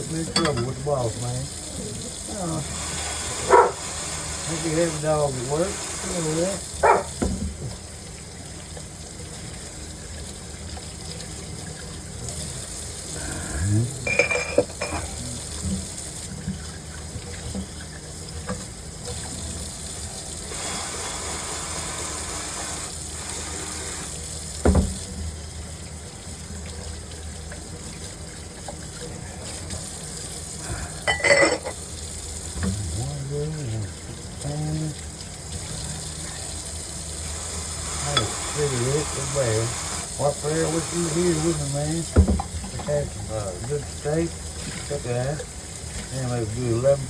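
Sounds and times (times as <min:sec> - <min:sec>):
running water from tap: 0:00.0 - 0:47.0
dish knocks and clatters: 0:00.3 - 0:00.8, 0:14.1 - 0:15.1, 0:31.1 - 0:31.8, 0:42.2 - 0:42.9.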